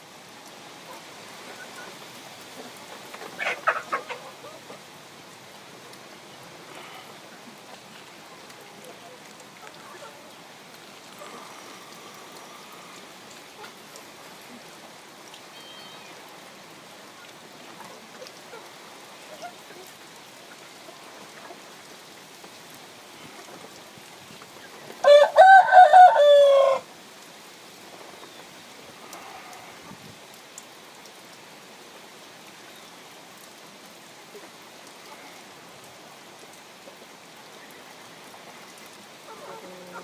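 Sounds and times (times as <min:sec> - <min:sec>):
steady hiss: 0:00.0 - 0:25.1, 0:26.8 - 0:40.0
rooster crowing: 0:25.0 - 0:26.9.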